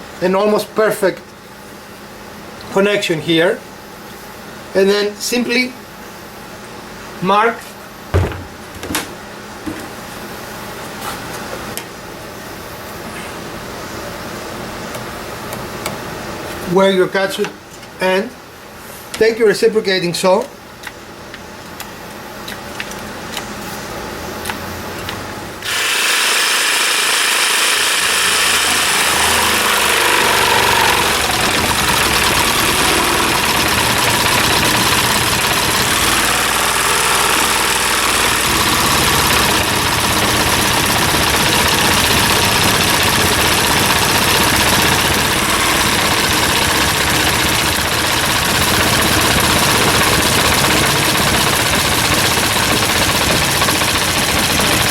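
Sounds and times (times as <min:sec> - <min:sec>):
electric jigsaw cutting board: 0:25.6 - 0:54.9.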